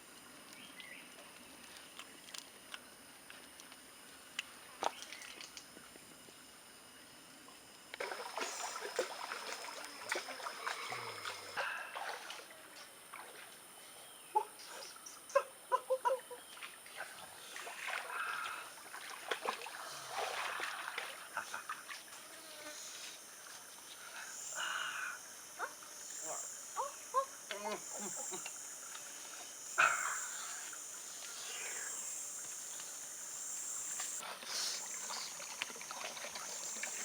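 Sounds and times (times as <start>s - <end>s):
water splashing and trickling: 4.8s - 6.0s, 7.9s - 13.6s, 16.4s - 22.4s, 34.8s - 37.0s.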